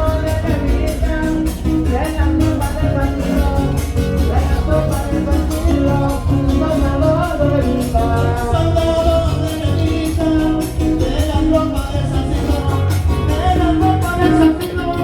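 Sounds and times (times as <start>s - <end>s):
strummed guitars: 0.0s - 15.0s.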